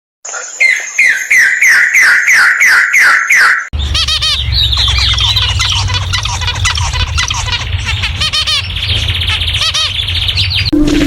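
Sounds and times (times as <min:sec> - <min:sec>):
high bird chirping: 0:00.2 - 0:10.9
bird calling in descending notes: 0:00.3 - 0:10.7
low rumble: 0:03.8 - 0:11.0.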